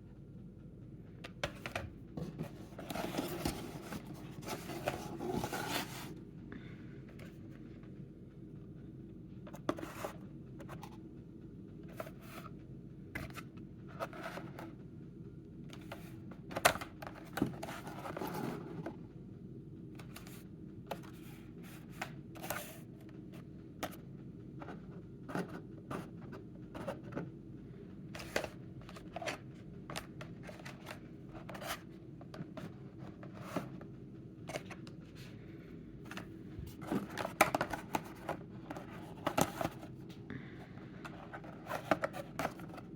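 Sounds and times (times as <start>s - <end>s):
steady low hum: 0.0s - 42.9s
cardboard and plastic packaging rustling: 1.5s - 6.2s, 36.1s - 42.9s.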